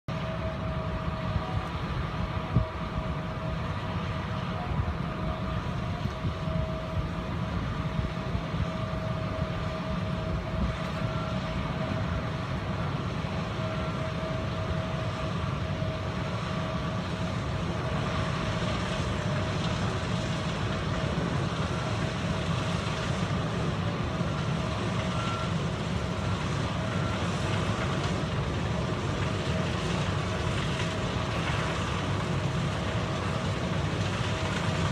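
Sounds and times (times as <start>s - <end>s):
constant whine: 0.0s - 34.9s
harvester engine drone: 0.1s - 34.9s
short beeps: 25.0s - 25.6s.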